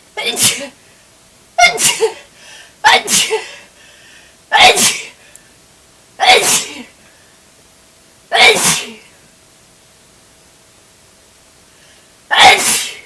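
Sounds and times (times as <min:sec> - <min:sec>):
person sneezing loudly: 0:00.2 - 0:00.8, 0:01.6 - 0:03.7, 0:04.5 - 0:05.2, 0:06.2 - 0:07.0, 0:08.3 - 0:09.2, 0:12.3 - 0:13.0.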